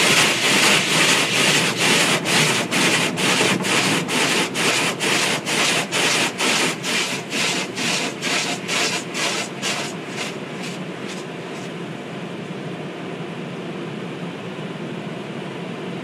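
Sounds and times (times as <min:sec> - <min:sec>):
car wash brushes swishing: 0:00.0 - 0:11.8.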